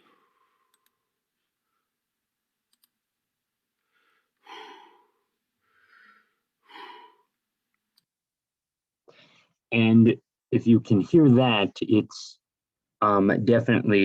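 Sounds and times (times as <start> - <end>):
faint clicks: 2.7 - 3.0
short breath: 3.8 - 7.3.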